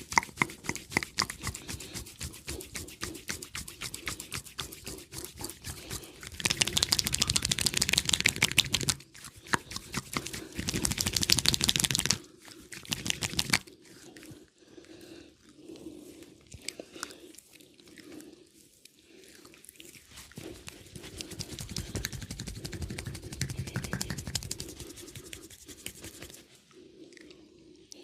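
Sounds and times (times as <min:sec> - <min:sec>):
hands crackling and tapping in massage: 0:00.0 - 0:13.6, 0:20.4 - 0:26.4.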